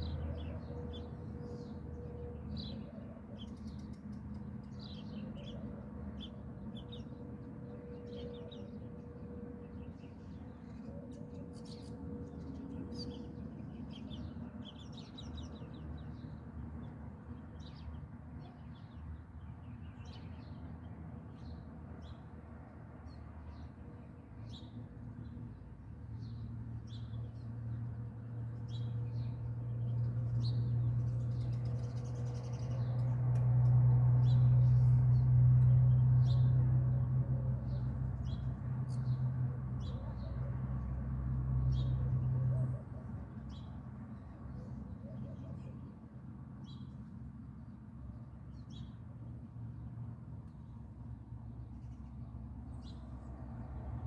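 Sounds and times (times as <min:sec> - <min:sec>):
small birds chirping: 0:26.2 - 0:36.6.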